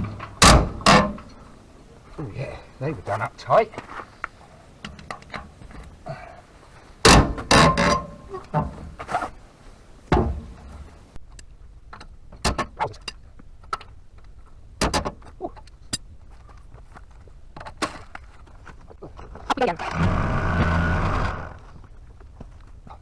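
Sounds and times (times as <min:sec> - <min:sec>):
metal clanks of tools and nuts: 0:00.0 - 0:01.4, 0:07.1 - 0:08.8.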